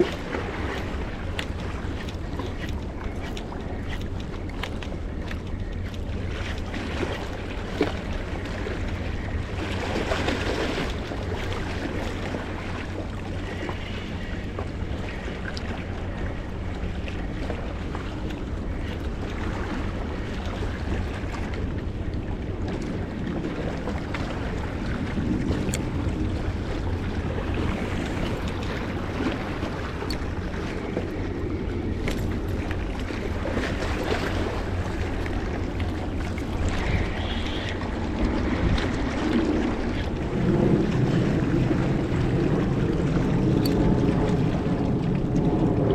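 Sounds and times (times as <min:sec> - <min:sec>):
wind buffeting microphone: 0:00.0 - 0:45.9
water washing against rocks: 0:23.9 - 0:45.9.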